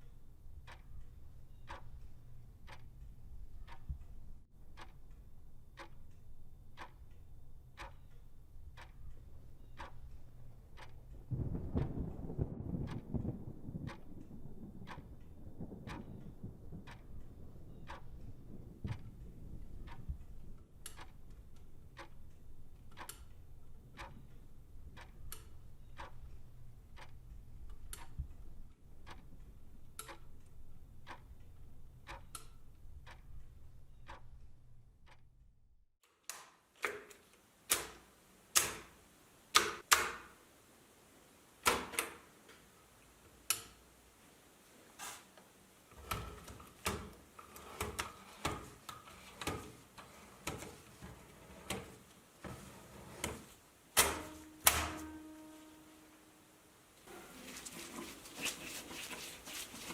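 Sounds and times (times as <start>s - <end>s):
mechanical ticking: 0.0s - 35.4s
sharp clicks and clacks: 10.8s - 23.4s.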